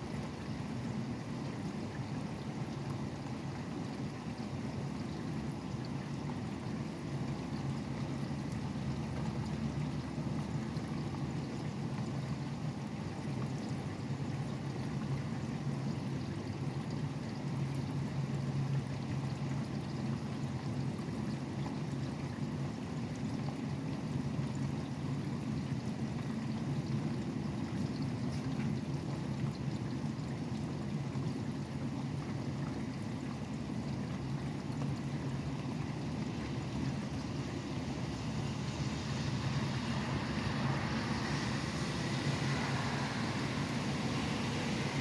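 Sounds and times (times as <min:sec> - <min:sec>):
highway traffic hum: 0:34.4 - 0:45.0
passing vehicle hiss: 0:36.2 - 0:45.0
steady rain falling: 0:36.4 - 0:45.0.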